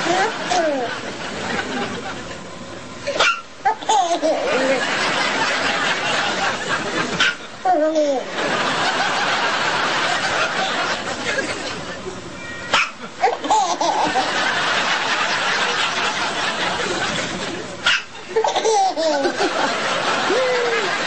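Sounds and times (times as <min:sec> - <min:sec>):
breathy laughter: 0:04.2 - 0:07.2, 0:18.3 - 0:21.0
baby hiccups: 0:12.7 - 0:13.0.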